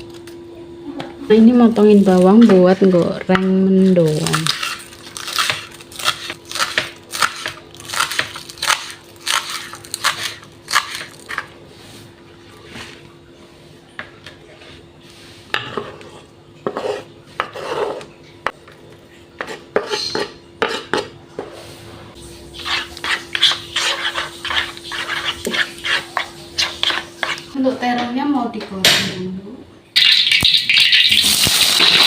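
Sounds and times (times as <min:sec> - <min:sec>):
knife cutting onions on board: 0:04.3 - 0:11.5.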